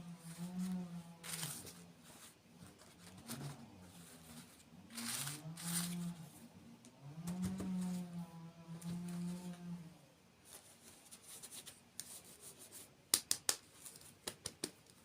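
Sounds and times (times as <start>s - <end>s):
low humming tone: 0.0s - 10.2s.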